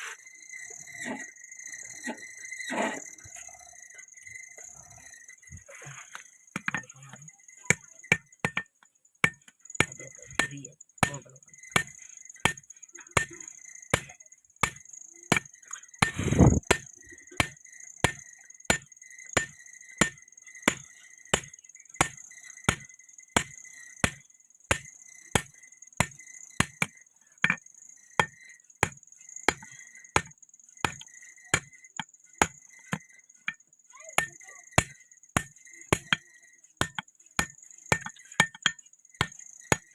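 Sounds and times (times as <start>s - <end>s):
hammer striking steel on anvil: 7.7s - 12.6s, 14.0s - 27.6s, 36.8s - 39.9s.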